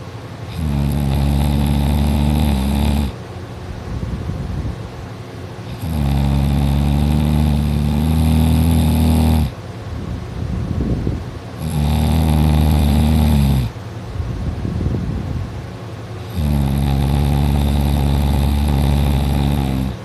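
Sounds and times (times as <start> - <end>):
loud snoring: 0.5 - 3.2, 5.6 - 9.6, 11.6 - 13.8, 16.2 - 20.0.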